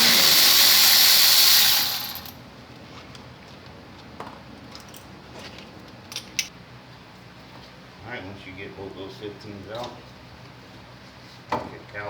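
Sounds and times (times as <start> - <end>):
power ratchet spinning: 0.0 - 2.4.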